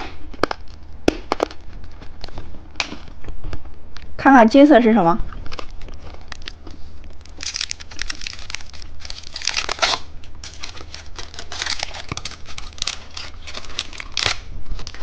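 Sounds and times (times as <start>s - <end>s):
candy wrapper crinkling: 5.4s - 15.0s.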